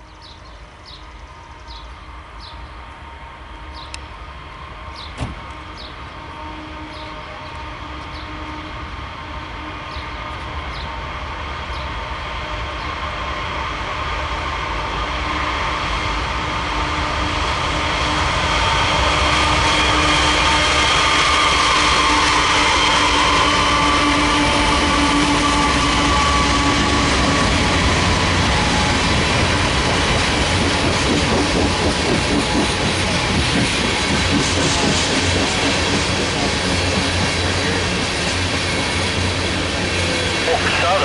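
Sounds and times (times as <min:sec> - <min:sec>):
locomotive whine: 0:00.0 - 0:41.0
train wheels clattering on rails: 0:17.3 - 0:41.0.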